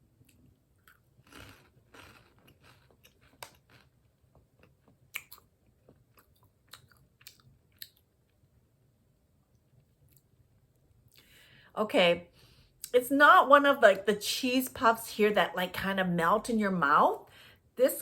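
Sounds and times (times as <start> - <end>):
person chewing crunchy snacks: 0.2 - 8.4.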